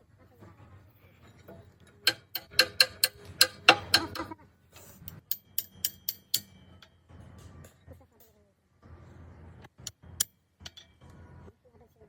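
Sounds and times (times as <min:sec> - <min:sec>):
hammer striking metal: 0:01.5 - 0:04.4, 0:05.1 - 0:07.1, 0:09.9 - 0:11.0.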